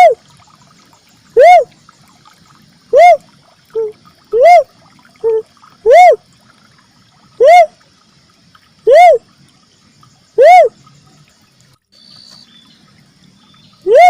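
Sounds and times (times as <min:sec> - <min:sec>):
dove hooting call: 0:00.0 - 0:00.2, 0:01.4 - 0:01.8, 0:02.9 - 0:06.2, 0:07.4 - 0:07.8, 0:08.8 - 0:09.2, 0:10.4 - 0:10.8.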